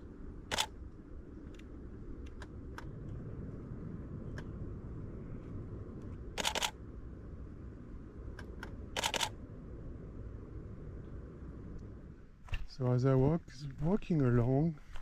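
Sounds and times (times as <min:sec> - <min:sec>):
low rumble: 0:00.0 - 0:15.0
camera shutter clicks: 0:00.5 - 0:00.7, 0:06.4 - 0:06.8, 0:09.0 - 0:09.4.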